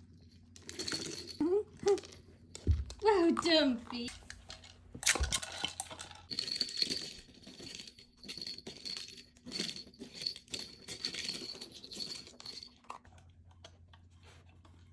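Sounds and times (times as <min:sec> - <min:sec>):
small hard objects rattling: 0:03.4 - 0:12.8.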